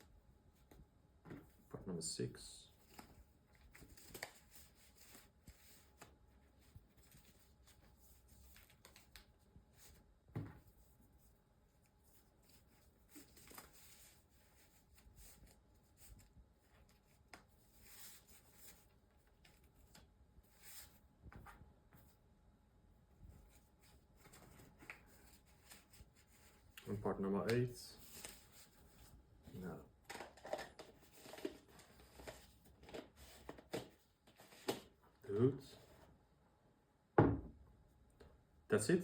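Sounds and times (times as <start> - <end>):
faint rustling and handling: 0.0 - 22.3, 23.0 - 36.2.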